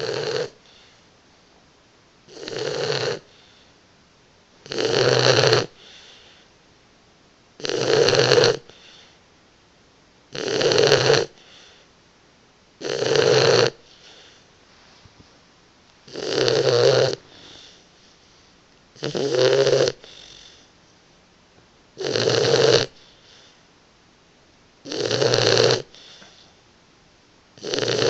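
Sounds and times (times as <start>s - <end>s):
puppy snoring: 0.0s - 1.0s, 2.2s - 3.6s, 4.6s - 6.4s, 7.6s - 9.2s, 10.3s - 11.9s, 12.8s - 14.5s, 16.1s - 17.9s, 19.0s - 20.7s, 22.0s - 23.6s, 24.8s - 26.6s, 27.6s - 28.0s.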